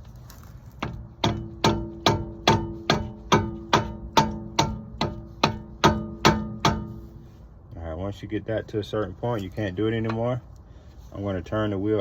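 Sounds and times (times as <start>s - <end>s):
rubber mallet hammering metal: 0.8s - 7.2s.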